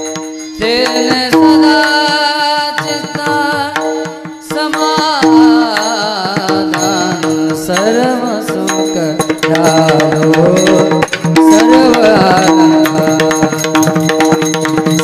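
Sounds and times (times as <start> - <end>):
person singing ornamented notes: 0.0 - 15.0
tabla strokes: 0.0 - 15.0.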